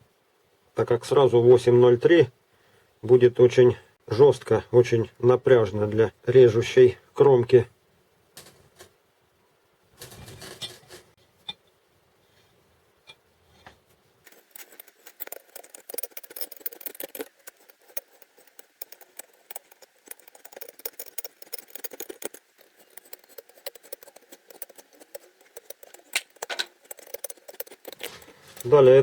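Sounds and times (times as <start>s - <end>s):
reamer scraping metal: 14.3s - 29.0s.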